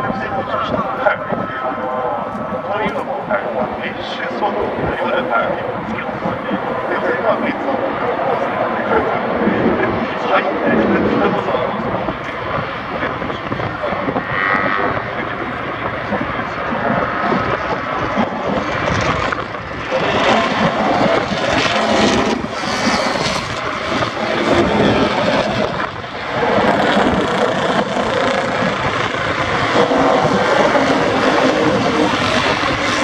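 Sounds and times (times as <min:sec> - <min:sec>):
racing motorcycles passing: 0:17.0 - 0:33.0.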